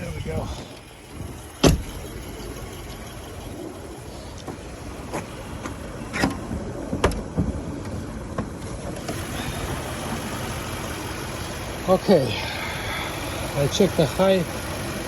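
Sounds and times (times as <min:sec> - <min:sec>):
knocks and clicks in car trunk: 0:01.6 - 0:02.0, 0:04.4 - 0:09.2.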